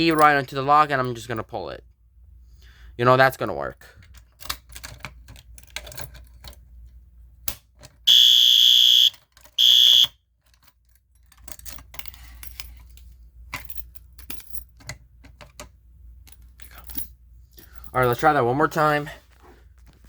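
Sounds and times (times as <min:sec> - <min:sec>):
handling clicks and knocks: 0:04.0 - 0:08.0, 0:09.1 - 0:18.3
fire alarm horn blasts: 0:08.1 - 0:10.2.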